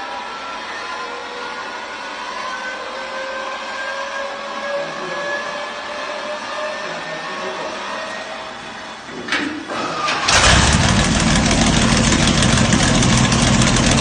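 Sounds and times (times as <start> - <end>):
motor running loud: 10.3 - 14.0.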